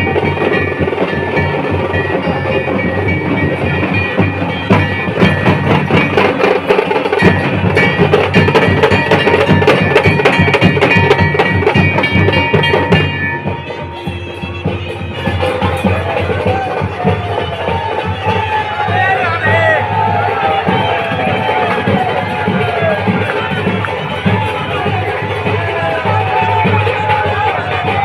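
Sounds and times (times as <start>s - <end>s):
drums beating: 0.0s - 28.0s
shehnai playing sustained notes: 13.4s - 16.1s.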